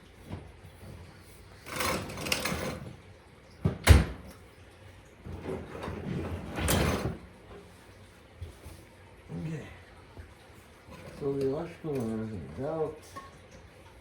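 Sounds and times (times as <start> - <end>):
scraping and sliding handling noises: 5.2 - 7.3.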